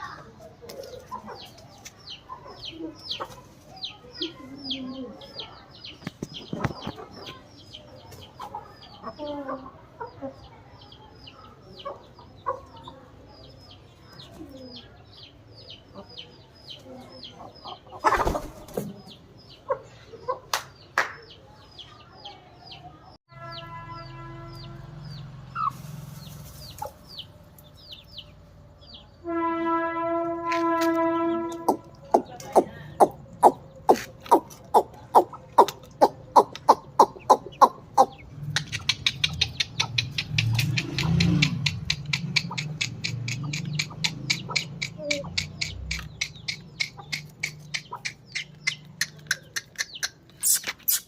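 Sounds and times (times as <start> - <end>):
chickens clucking: 0.0 - 22.0, 24.6 - 29.1, 31.5 - 51.0.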